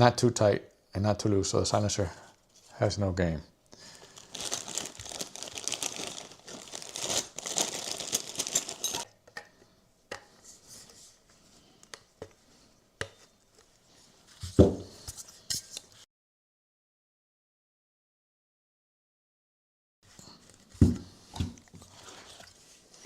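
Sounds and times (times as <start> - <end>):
material crinkling and rustling: 4.0 - 9.1.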